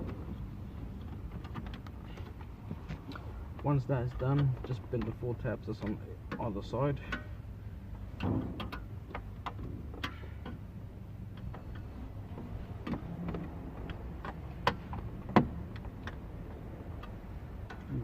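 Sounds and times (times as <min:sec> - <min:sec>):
metal clicks and taps: 0:12.8 - 0:17.9.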